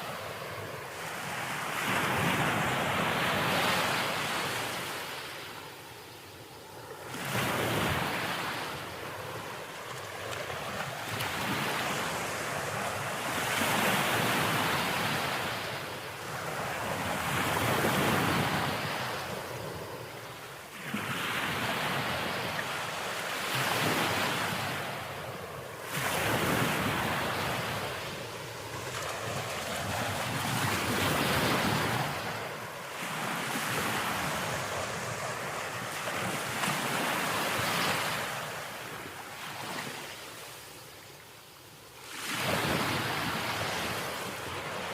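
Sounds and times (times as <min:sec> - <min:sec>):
sea waves washing onto shore: 0:06.7 - 0:40.7.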